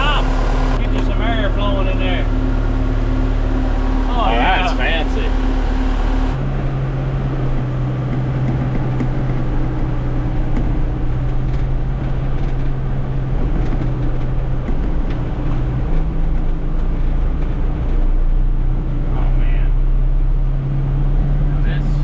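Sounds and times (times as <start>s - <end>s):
tractor diesel engine running: 0.0s - 22.0s.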